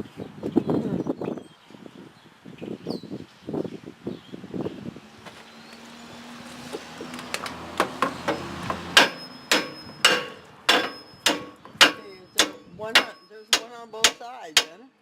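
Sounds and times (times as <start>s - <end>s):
hammer striking steel: 8.0s - 14.8s.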